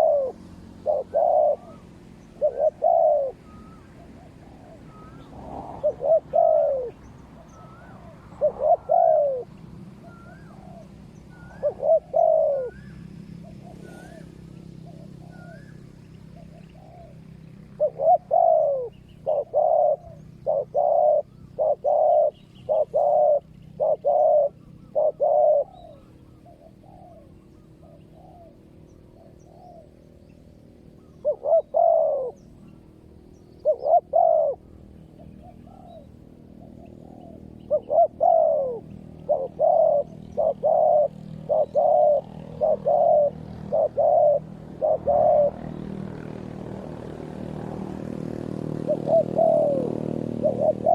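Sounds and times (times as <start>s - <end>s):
faint answering dove coos: 0.0s - 12.9s, 37.2s - 45.6s
loud dove coos: 0.0s - 50.9s.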